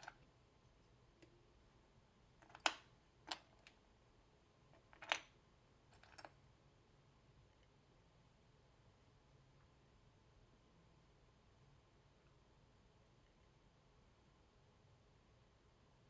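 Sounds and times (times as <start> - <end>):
plastic parts clicking together: 2.4 - 3.8.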